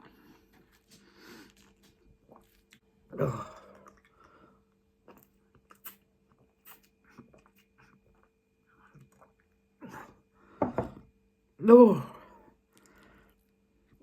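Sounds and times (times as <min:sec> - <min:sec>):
person chewing food: 0:00.0 - 0:10.2
wet mouth clicks: 0:05.2 - 0:06.0.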